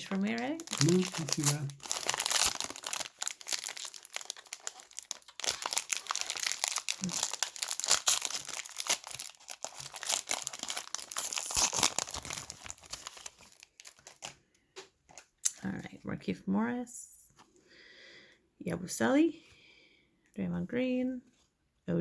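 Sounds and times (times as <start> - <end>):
wrapper crinkling and tearing: 0.0 - 14.4.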